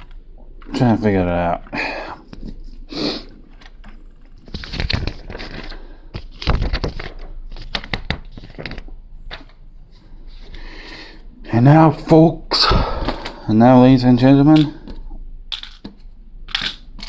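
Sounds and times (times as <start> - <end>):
plastic bricks clicking: 14.6 - 17.0.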